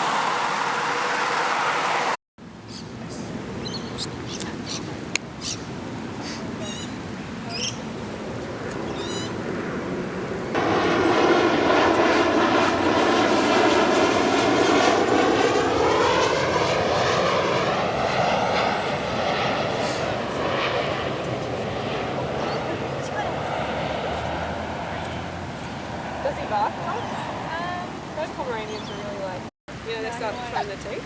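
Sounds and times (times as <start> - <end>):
large vehicle passing close by: 17.2 - 28.6.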